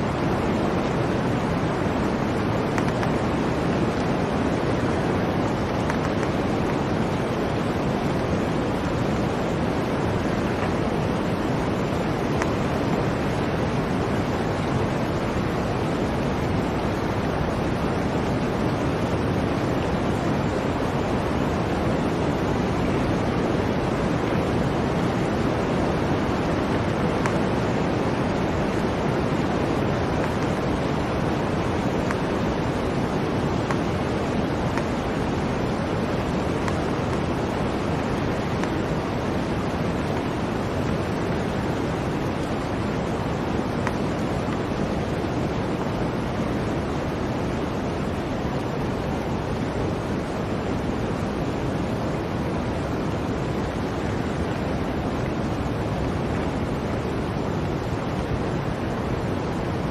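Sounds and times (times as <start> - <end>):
blizzard wind rushing: 0.0 - 59.9.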